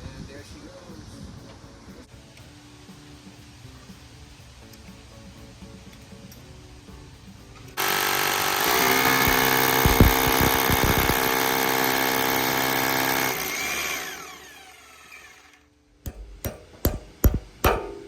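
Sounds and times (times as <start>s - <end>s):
power drill motor whine: 7.8s - 15.6s
heavy knocks: 16.0s - 18.0s.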